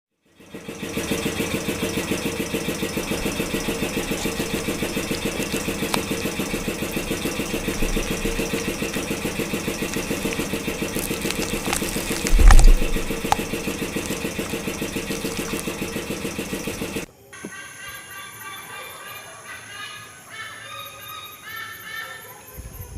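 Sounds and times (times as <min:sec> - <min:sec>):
engine idling with even chug: 0:00.2 - 0:17.1.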